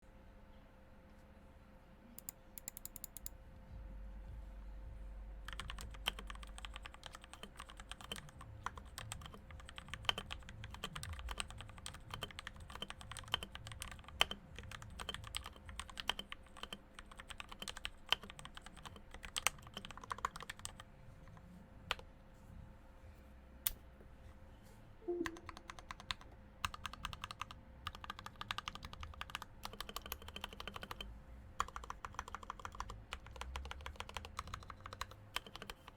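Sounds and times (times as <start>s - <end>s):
mechanical keyboard typing: 2.2s - 3.3s, 5.5s - 20.8s, 25.2s - 31.0s, 31.6s - 35.9s.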